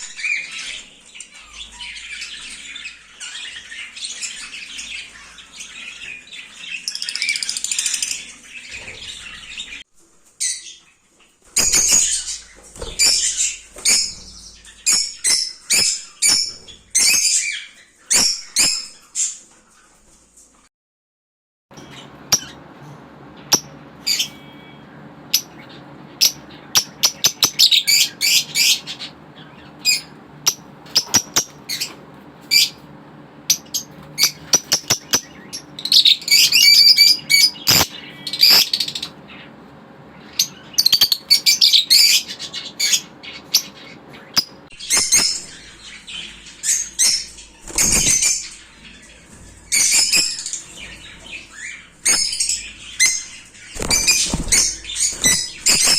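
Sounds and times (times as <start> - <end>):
parrots chirping and squawking: 0.0 - 20.0, 21.8 - 55.9
steady low hum: 21.7 - 55.9.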